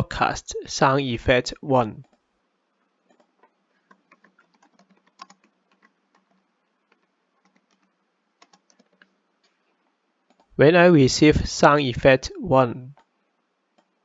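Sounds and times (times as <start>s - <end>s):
faint keyboard typing: 2.0s - 10.6s, 12.9s - 14.0s.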